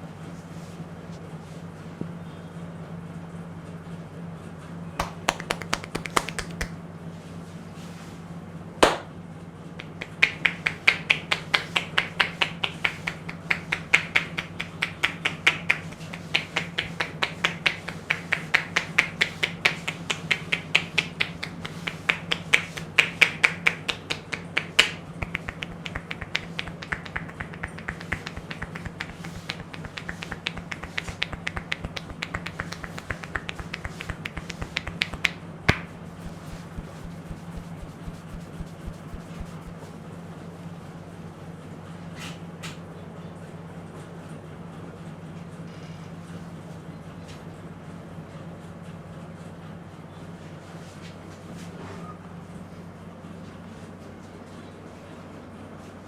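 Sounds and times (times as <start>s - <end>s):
low steady hum: 4.6s - 41.6s
hair snapping between fingers: 5.0s - 6.8s, 8.8s - 9.1s, 9.8s - 39.8s.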